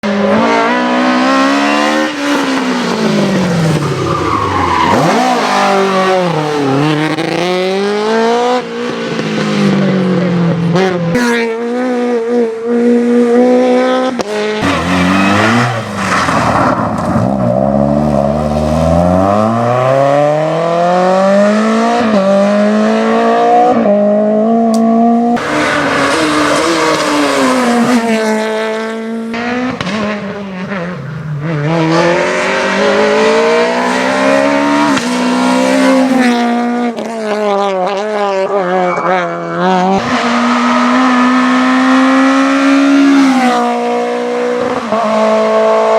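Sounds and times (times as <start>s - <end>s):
rally car engine accelerating: 0.0s - 45.9s.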